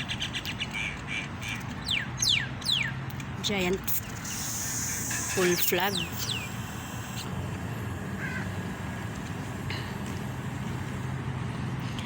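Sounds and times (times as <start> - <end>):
road traffic hum: 0.0 - 12.0
short bird calls: 8.2 - 8.6.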